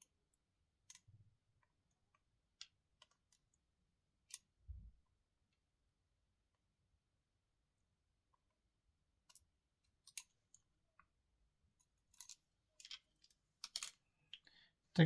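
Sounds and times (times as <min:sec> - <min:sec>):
small clicks and taps of tools: 0:00.9 - 0:03.6, 0:09.2 - 0:11.1, 0:11.8 - 0:14.5.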